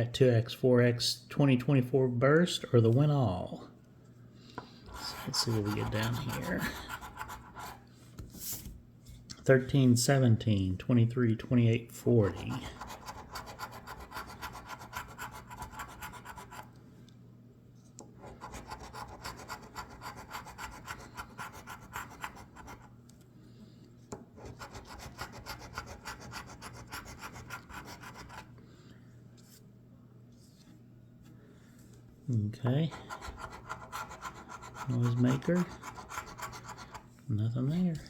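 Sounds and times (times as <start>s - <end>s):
scratch-off ticket being scratched: 4.9s - 7.8s, 12.2s - 16.7s, 18.3s - 22.8s, 24.4s - 28.5s, 32.9s - 37.0s.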